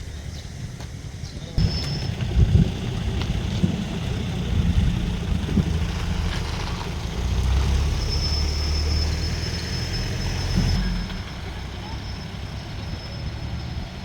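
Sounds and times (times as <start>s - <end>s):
vehicle engine rumbling: 0.0s - 14.0s
thin high whine: 1.6s - 2.7s.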